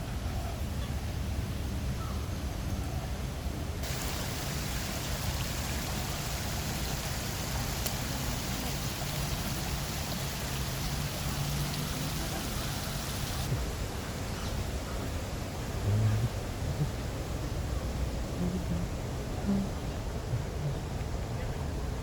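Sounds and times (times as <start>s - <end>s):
hiss of falling water: 3.8s - 14.8s.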